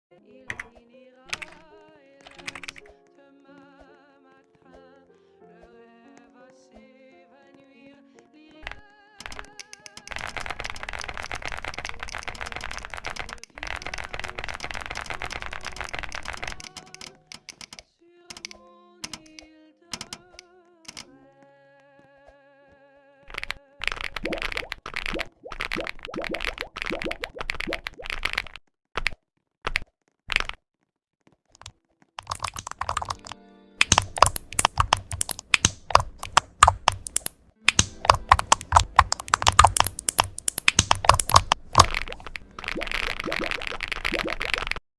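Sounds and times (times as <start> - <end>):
keyboard key clicks: 0.5 - 3.0, 8.6 - 21.1, 31.6 - 44.8.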